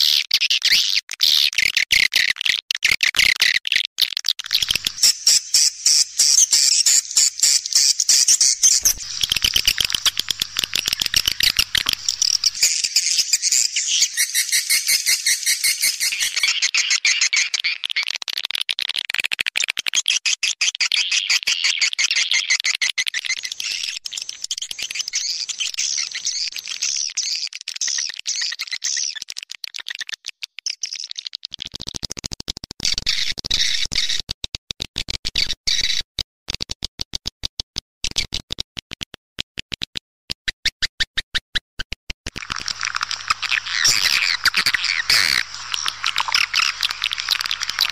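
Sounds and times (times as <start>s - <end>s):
swiftlets twittering: 4.5s - 16.6s, 42.4s - 47.9s
sharp rapid clicking: 41.8s - 47.9s.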